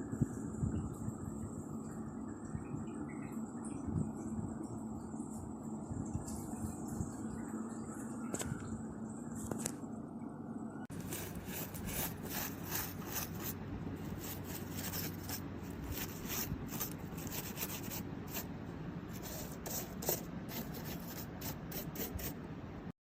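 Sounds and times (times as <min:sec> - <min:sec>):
brush bristles scrubbing: 0:10.9 - 0:22.4.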